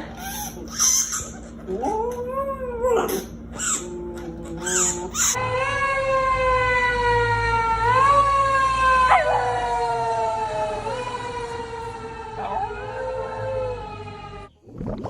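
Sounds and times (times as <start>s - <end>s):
siren-like wail: 5.2s - 14.5s.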